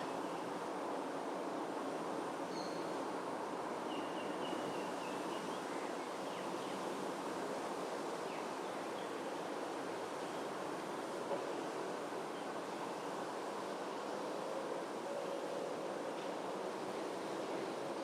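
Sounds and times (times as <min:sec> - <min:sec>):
outdoor background noise: 0:00.0 - 0:18.0
faint bird chirps: 0:02.5 - 0:03.0.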